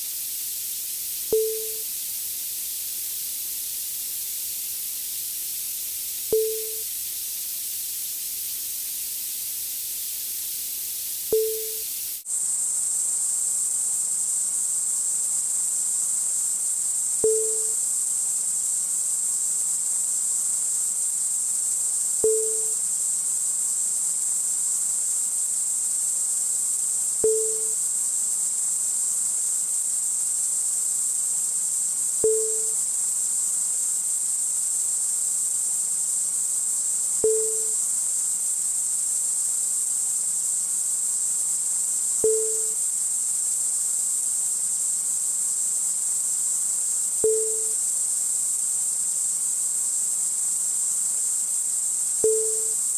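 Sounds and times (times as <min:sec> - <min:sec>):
high-pitched bearing whine: 0:01.3 - 0:01.9, 0:06.3 - 0:06.9, 0:11.3 - 0:11.9, 0:17.3 - 0:17.8, 0:22.3 - 0:22.8, 0:32.3 - 0:32.8, 0:37.3 - 0:37.8, 0:42.3 - 0:42.8, 0:52.3 - 0:52.8.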